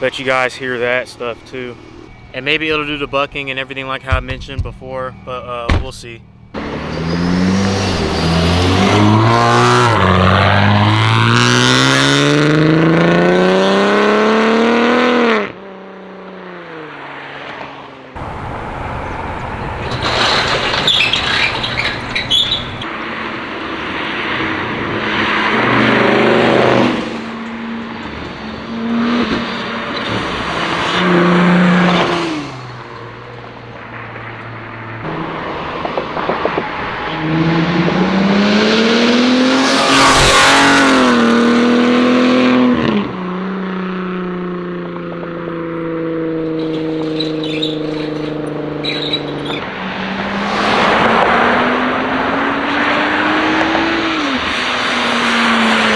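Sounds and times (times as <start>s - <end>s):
car engine revving hard: 6.6s - 15.6s, 35.0s - 44.6s, 48.1s - 55.9s
exhaust crackling pops: 18.2s - 22.9s, 35.0s - 38.2s.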